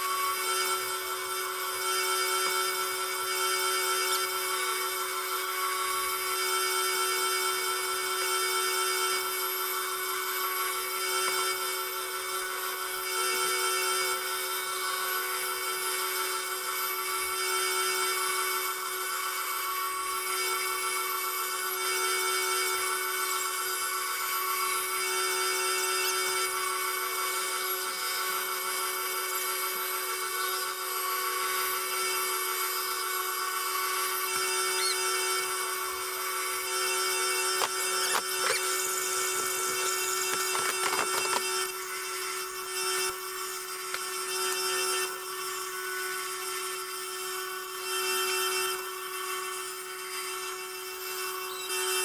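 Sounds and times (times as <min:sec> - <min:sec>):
grinder motor hum: 0:00.0 - 0:52.0.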